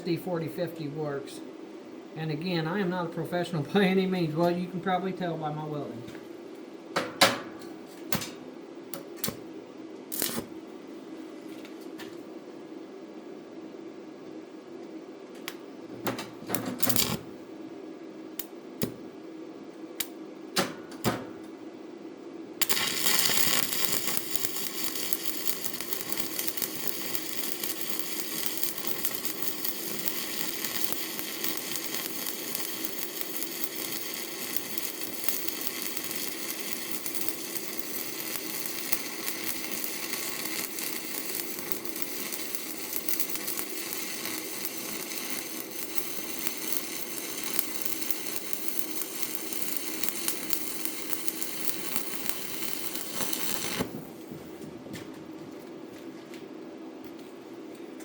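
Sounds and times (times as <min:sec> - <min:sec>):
welding arc hissing: 0:10.1 - 0:10.5, 0:16.6 - 0:17.3, 0:22.6 - 0:54.2.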